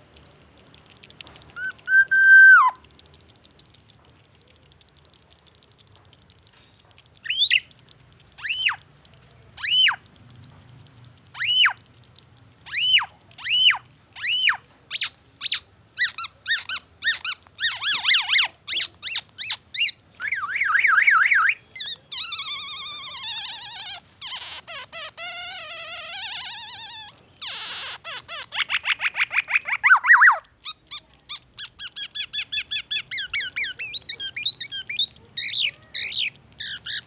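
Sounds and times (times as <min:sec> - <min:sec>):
bird singing whistled notes and trills: 0:01.6 - 0:02.8, 0:07.2 - 0:07.7, 0:19.1 - 0:22.0, 0:28.7 - 0:30.4.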